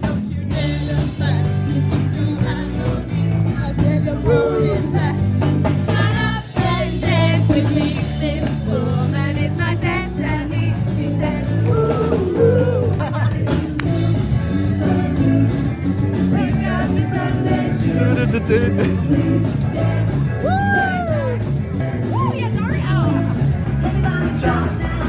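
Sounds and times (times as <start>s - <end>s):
person singing: 0.0s - 5.3s, 16.4s - 21.2s
low bass line: 0.0s - 25.0s
upbeat rock band music: 0.0s - 25.0s.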